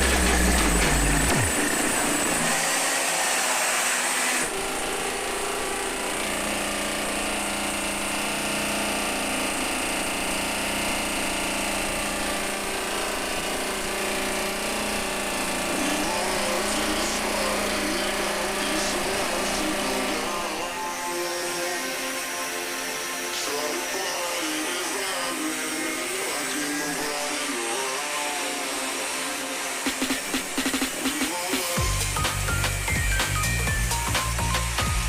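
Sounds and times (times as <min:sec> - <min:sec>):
power tool running: 0:00.0 - 0:35.0.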